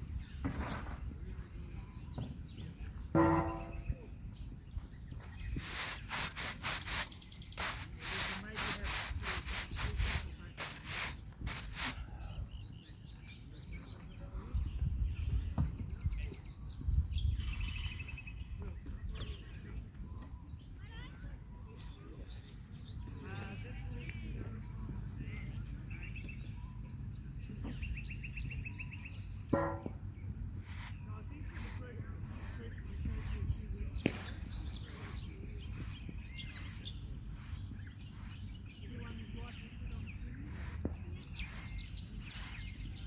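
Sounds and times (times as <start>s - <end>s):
birds chirping: 0.0s - 43.0s
broom sweeping: 5.4s - 12.0s, 29.6s - 30.0s, 30.6s - 38.5s, 40.5s - 42.9s.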